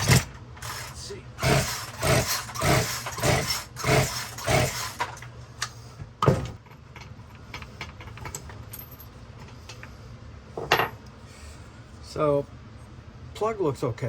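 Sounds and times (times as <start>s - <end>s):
chainsaw engine turning over: 0.0s - 5.2s
chainsaw starter cord pull: 0.0s - 5.2s.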